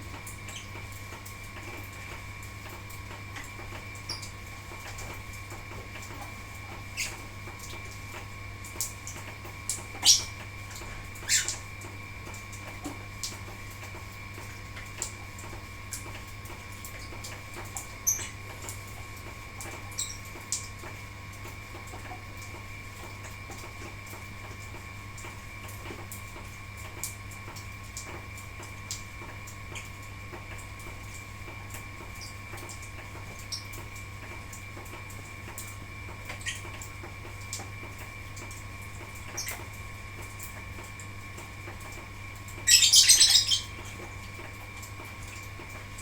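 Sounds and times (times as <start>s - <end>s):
lovebirds chirping: 10.0s - 10.3s, 42.7s - 43.8s.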